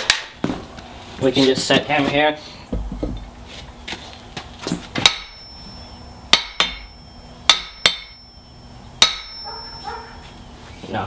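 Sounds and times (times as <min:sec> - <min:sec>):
hammer clanging on anvil: 0:04.7 - 0:08.4, 0:09.0 - 0:10.0.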